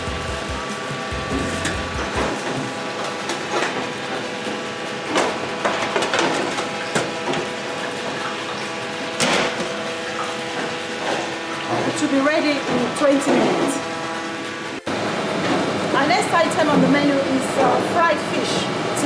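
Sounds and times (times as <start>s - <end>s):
machine hum: 0.0s - 19.0s
kitchen knocks and clatters: 5.1s - 7.5s, 9.2s - 9.7s.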